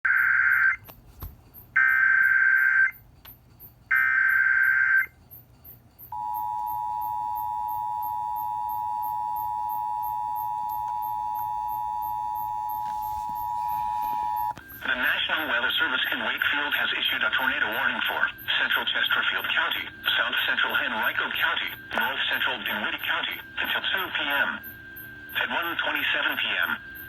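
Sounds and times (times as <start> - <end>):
steady attention tone: 6.0 - 27.0
raspy digital data bursts: 14.7 - 27.0.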